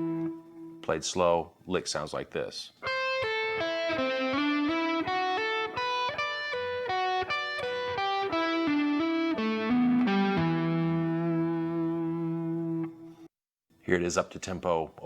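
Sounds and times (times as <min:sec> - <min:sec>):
electric guitar lick: 0:00.0 - 0:00.9, 0:02.8 - 0:13.2.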